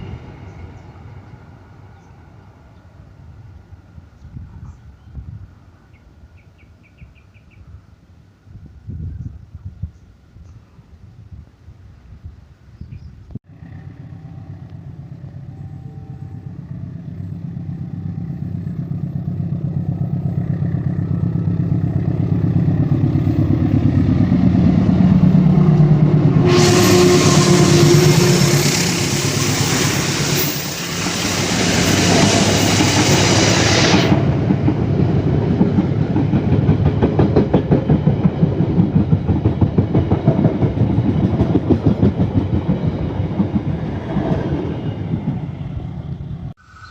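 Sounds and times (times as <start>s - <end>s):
diesel locomotive engine passing: 0.0s - 7.5s, 13.5s - 46.9s
wagons clickety-clack over rail joints: 34.1s - 45.4s.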